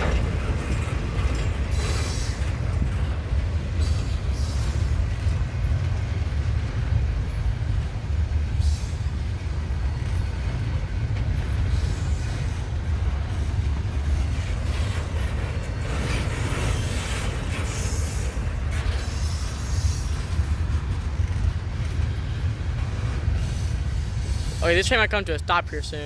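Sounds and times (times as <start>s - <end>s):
train cars rumbling on rails: 0.0s - 26.0s
high-pitched wheel squeals: 17.7s - 20.6s.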